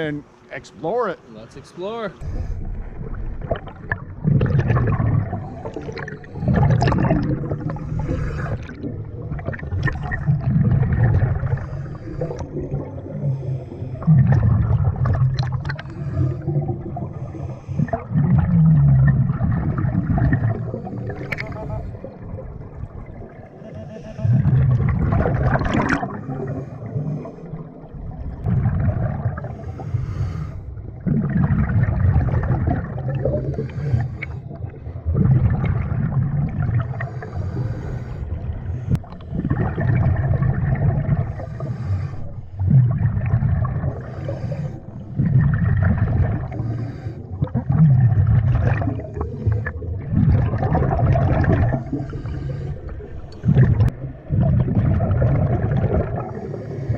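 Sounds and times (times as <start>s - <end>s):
bubbles gurgling underwater: 2.2s - 56.9s
diver inhaling through regulator: 5.2s - 10.5s, 11.1s - 14.5s, 15.6s - 18.9s, 26.0s - 27.9s, 29.3s - 30.8s, 33.2s - 34.6s, 36.8s - 39.4s, 41.1s - 43.0s, 43.7s - 45.4s, 46.2s - 47.8s, 48.8s - 50.1s, 50.8s - 53.9s, 56.0s - 56.9s.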